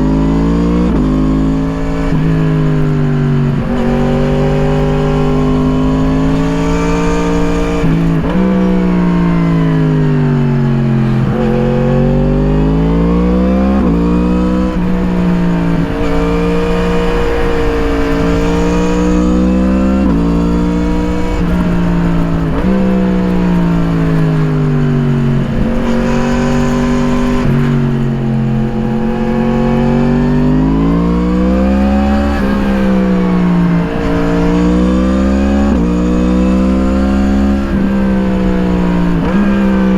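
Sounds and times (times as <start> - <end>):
motorcycle engine accelerating: 0.0 - 39.9
wind rush: 0.4 - 39.9.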